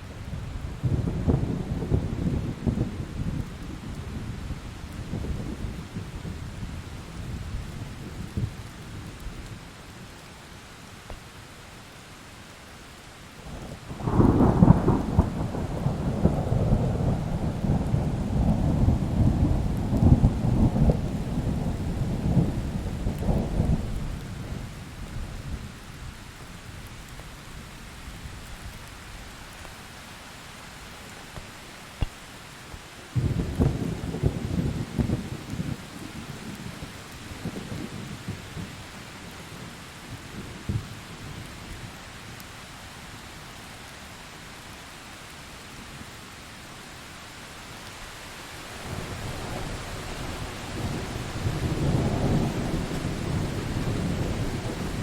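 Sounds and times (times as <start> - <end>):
rain hissing: 0.0 - 55.0
thunder rolling: 14.0 - 24.8.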